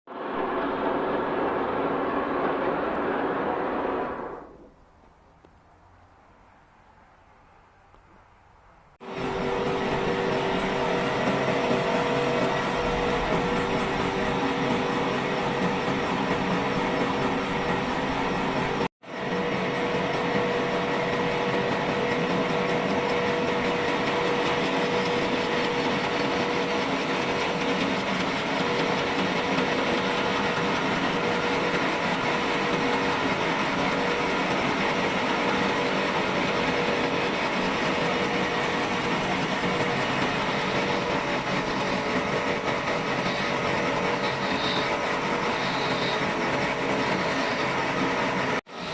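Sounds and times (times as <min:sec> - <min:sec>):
steady machine hum: 0:00.1 - 0:04.7, 0:09.0 - 0:48.9
sawmill saw cutting wood: 0:09.1 - 0:19.5, 0:20.4 - 0:48.4.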